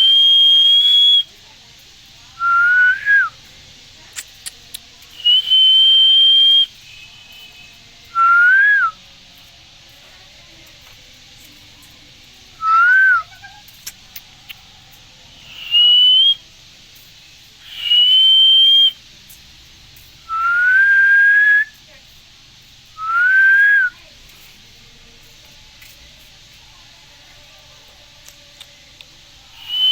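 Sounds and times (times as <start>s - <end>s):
parrot whistling: 0.0s - 1.3s, 5.2s - 6.7s, 12.6s - 13.7s, 15.4s - 16.4s, 17.6s - 19.0s, 20.3s - 21.8s, 23.0s - 24.0s, 29.6s - 29.9s
faint clicks: 3.4s - 5.6s, 9.4s - 12.1s, 13.3s - 16.3s, 24.2s - 29.9s.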